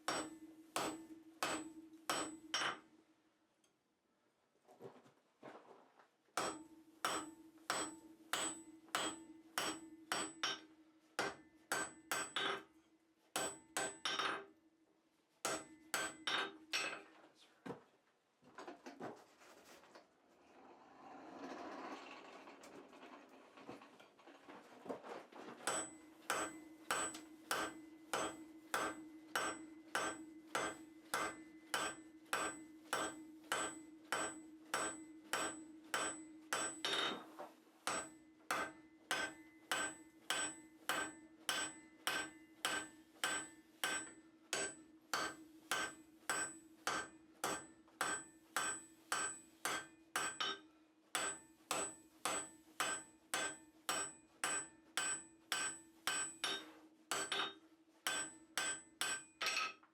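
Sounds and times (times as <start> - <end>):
hammer striking steel on anvil: 0.0 - 2.9, 6.4 - 12.8, 13.4 - 14.6, 15.4 - 17.0, 25.6 - 59.9.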